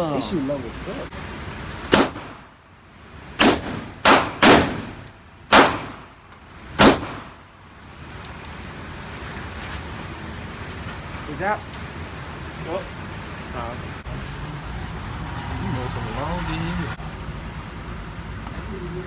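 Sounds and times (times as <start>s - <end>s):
gunshots with echo: 1.9s - 2.5s, 3.4s - 6.1s, 6.8s - 7.4s.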